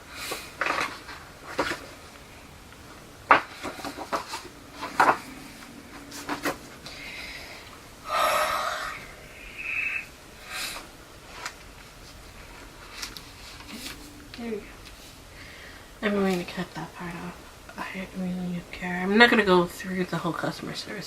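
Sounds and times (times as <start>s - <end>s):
paper rustling: 0.2s - 2.1s, 3.3s - 7.3s, 11.2s - 14.2s.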